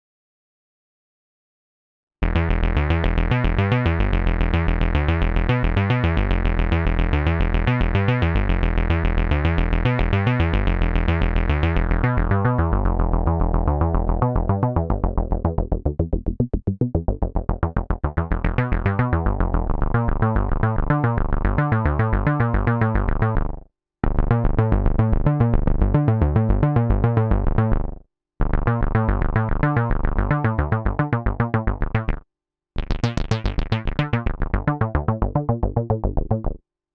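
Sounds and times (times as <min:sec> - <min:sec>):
synthesizer acid bass line: 0:02.2 - 0:32.2, 0:32.8 - 0:36.6.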